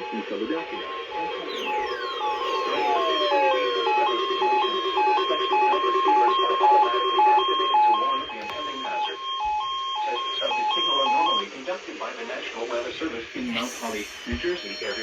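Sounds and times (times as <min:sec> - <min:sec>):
two-tone warble alarm: 0:00.0 - 0:11.5, 0:13.5 - 0:15.0.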